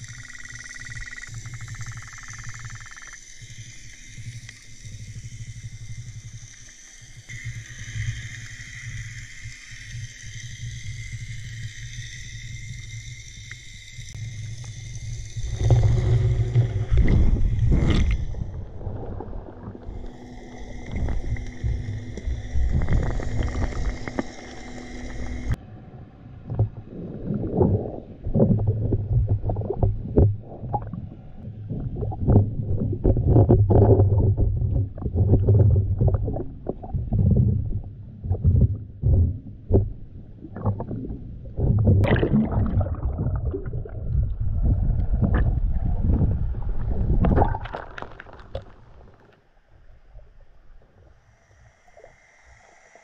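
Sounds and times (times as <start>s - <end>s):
steady hiss: 0.0s - 25.6s, 50.1s - 53.0s
faint steady tones: 0.0s - 27.4s
muffled underwater surf rumbling: 15.5s - 49.3s.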